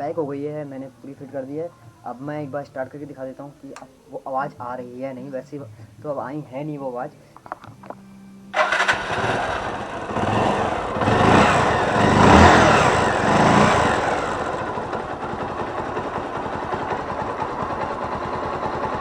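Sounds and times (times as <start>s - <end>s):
motorcycle engine revving and idling: 8.6s - 19.0s.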